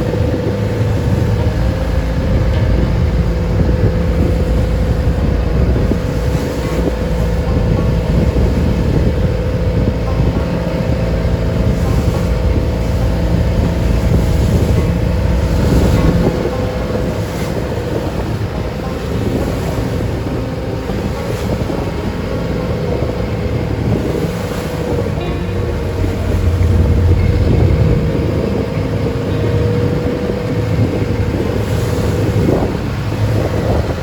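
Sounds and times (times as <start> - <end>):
boat engine running: 0.0 - 34.0
water washing around hull: 0.0 - 34.0
wind on microphone: 0.0 - 34.0.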